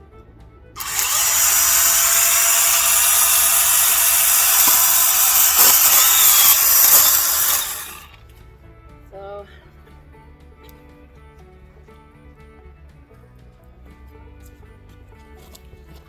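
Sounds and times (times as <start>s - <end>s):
pole saw chain whirring: 0.8s - 8.2s.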